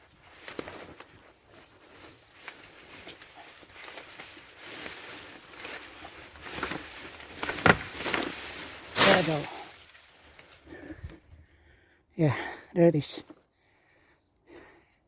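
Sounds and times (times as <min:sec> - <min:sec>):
tree leaves and branches rustling: 0:00.0 - 0:11.8.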